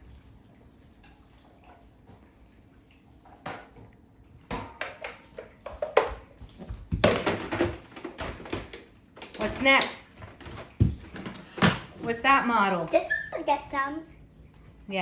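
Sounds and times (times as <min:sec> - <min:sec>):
plastic dustbin clicks and rattles: 0:06.9 - 0:11.8.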